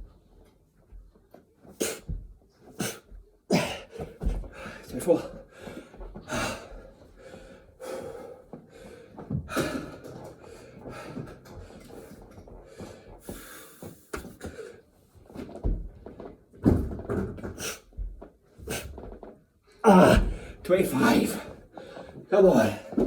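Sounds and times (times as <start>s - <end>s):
man breathing hard: 2.8s - 14.9s, 19.9s - 20.6s, 21.5s - 23.0s.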